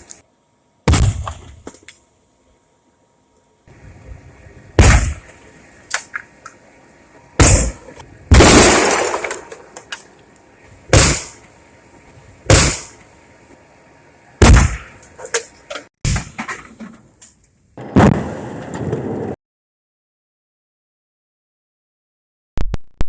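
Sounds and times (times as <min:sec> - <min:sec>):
loud explosion blasts: 0:08.3 - 0:09.2.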